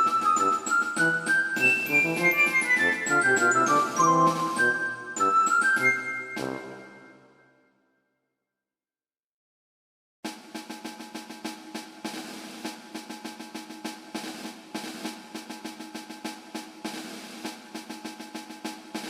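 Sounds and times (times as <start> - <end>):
fast snare drum beat: 0.0 - 6.6, 10.3 - 19.0.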